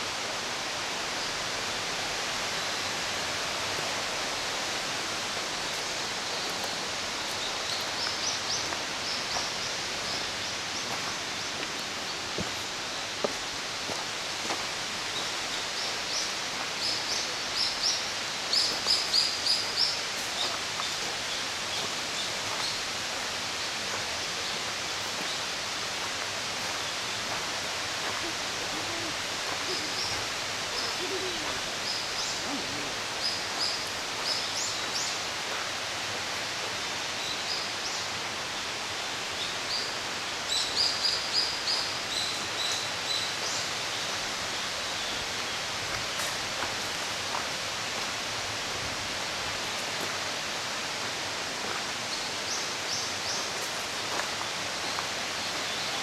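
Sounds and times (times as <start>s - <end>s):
songbird chirping: 28.0s - 35.2s.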